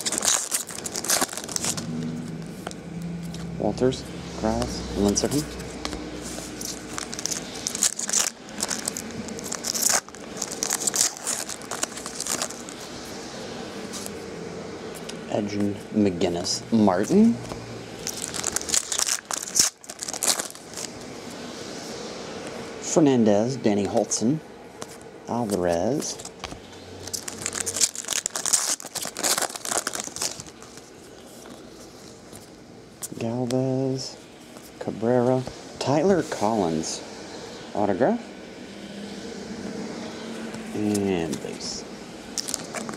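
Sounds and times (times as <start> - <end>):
papery crinkling and tearing: 0.0 - 3.5, 5.0 - 12.9, 18.0 - 21.0, 25.4 - 33.2, 42.4 - 42.9.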